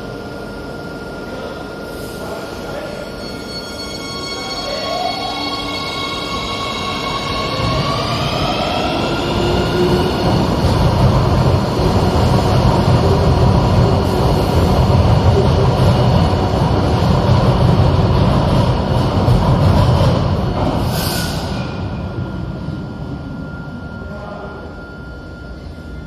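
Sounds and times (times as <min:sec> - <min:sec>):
train wheels rumbling: 0:06.9 - 0:23.6.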